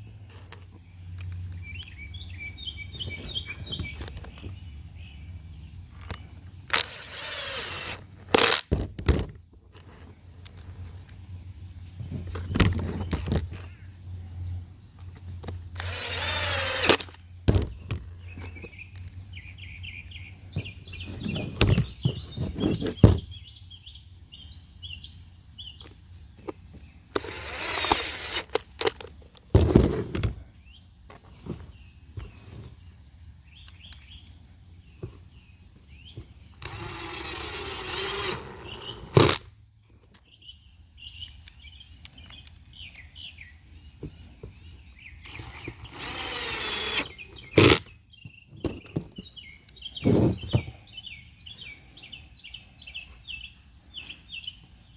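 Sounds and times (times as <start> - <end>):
birds chirping: 0.0 - 8.8, 9.6 - 54.9
knocks and clatter of parts: 5.9 - 10.9, 12.0 - 13.7, 15.0 - 18.8, 26.4 - 30.4
small power tool motor: 6.7 - 8.7, 15.8 - 17.2, 27.1 - 29.0, 36.6 - 39.5, 45.2 - 47.9.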